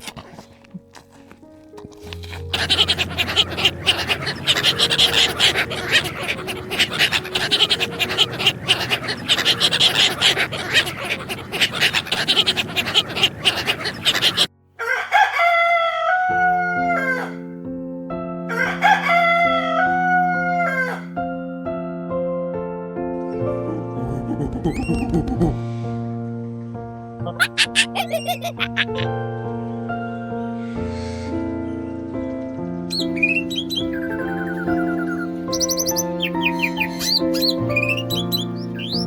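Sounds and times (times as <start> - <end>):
chickens clucking: 0.0 - 17.4, 18.5 - 21.1, 23.5 - 25.6, 27.3 - 29.1, 32.9 - 39.0
background music: 0.0 - 39.0
rooster crowing: 14.8 - 17.5, 18.5 - 21.1, 32.9 - 39.0.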